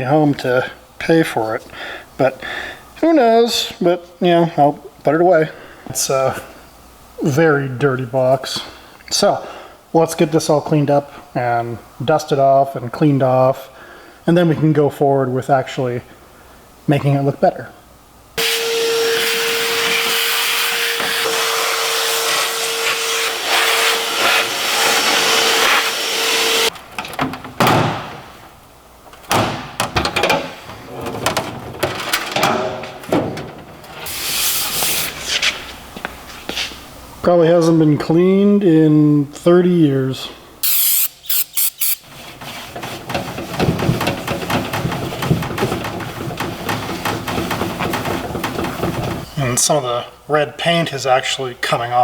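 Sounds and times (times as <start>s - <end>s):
spray bursts: 18.4s - 26.7s, 34.0s - 35.4s, 40.6s - 42.2s
vacuum cleaner whine: 18.4s - 26.7s
scrubbing and wiping metal: 19.2s - 26.7s, 30.6s - 36.8s, 41.3s - 49.4s
knocks and clatter: 29.1s - 34.0s, 42.4s - 49.3s.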